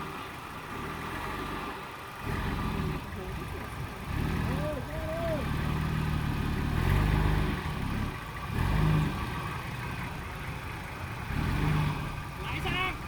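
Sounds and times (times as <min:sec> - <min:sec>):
engine revving: 0:00.0 - 0:13.0.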